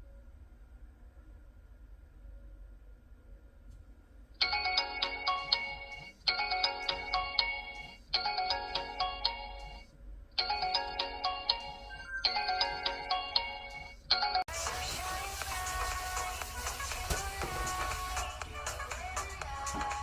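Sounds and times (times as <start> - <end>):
phone ringtone chiming melody: 4.4 - 14.9.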